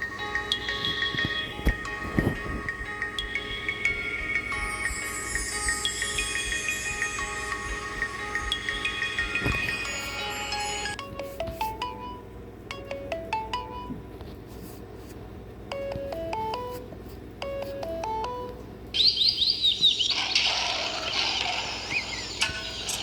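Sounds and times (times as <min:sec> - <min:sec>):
electronic ringtone melody: 0:00.0 - 0:14.0.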